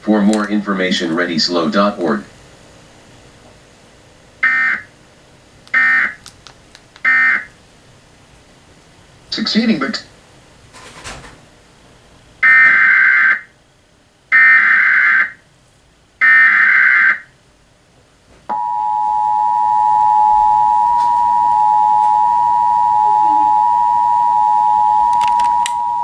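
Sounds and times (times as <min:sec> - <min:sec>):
screeching data bursts: 0:18.5 - 0:26.0
two-tone attention signal: 0:18.5 - 0:26.0.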